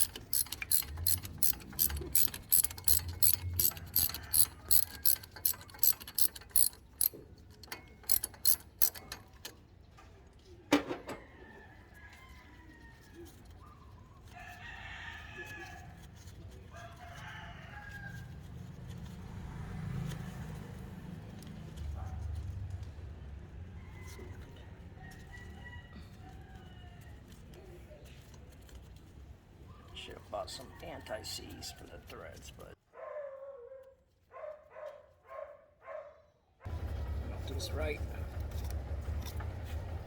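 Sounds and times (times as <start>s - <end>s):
rooster crowing: 0.0s - 6.7s
socket ratchet clicking: 0.0s - 9.5s.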